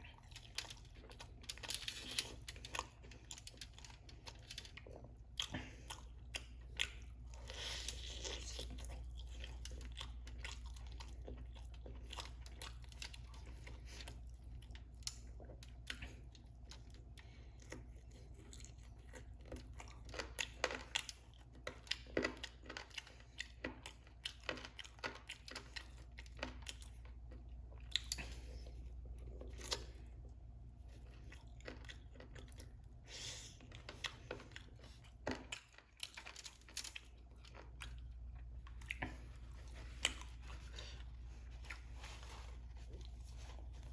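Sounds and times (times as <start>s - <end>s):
chewing and crunching chicken wings: 0.0s - 43.9s
low steady hum: 0.0s - 43.9s.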